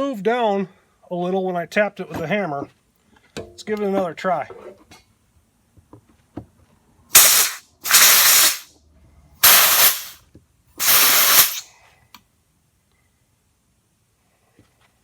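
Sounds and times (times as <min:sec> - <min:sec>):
compressed air blasts hissing: 0:07.1 - 0:08.7, 0:09.4 - 0:10.2, 0:10.8 - 0:11.7.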